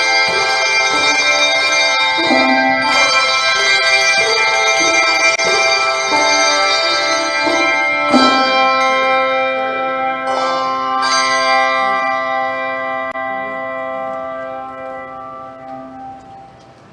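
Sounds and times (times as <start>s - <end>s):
handbell choir ringing chord: 0.0s - 16.9s.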